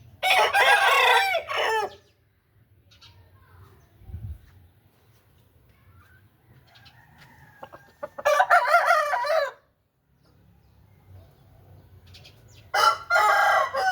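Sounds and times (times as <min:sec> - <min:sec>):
rooster crowing: 0:00.2 - 0:02.0, 0:06.9 - 0:09.6, 0:12.8 - 0:13.9.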